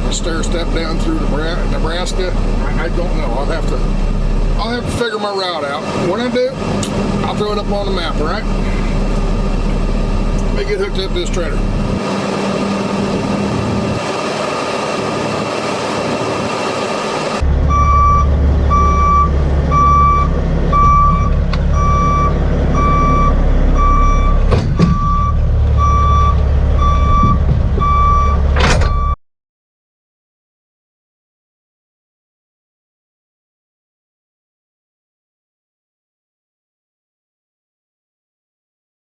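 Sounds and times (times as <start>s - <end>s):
diesel engine rumble: 0.0s - 29.2s
reversing alarm beeping: 16.7s - 29.2s.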